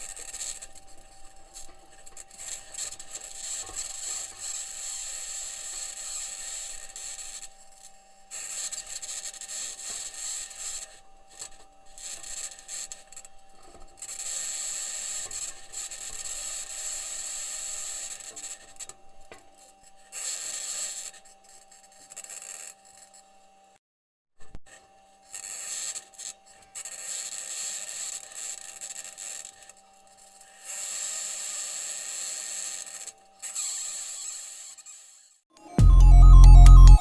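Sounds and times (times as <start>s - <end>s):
steady tone: 35.6s - 37.0s
high-pitched scratching noise: 35.7s - 37.0s.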